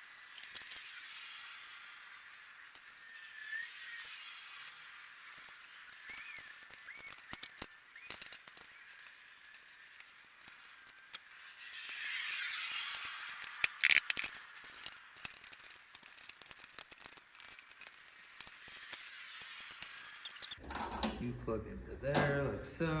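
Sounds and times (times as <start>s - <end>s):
parts clicking and rattling: 0.0s - 21.2s
sharp cluster of clicks: 4.6s - 12.2s, 12.8s - 20.6s.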